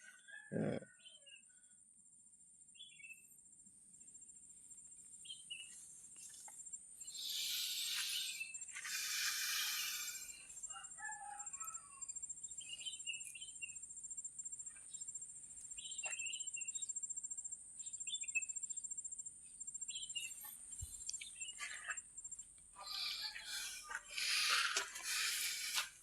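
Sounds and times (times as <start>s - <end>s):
faint birds chirping: 0.0s - 26.0s
high-pitched insect trill: 6.2s - 26.0s.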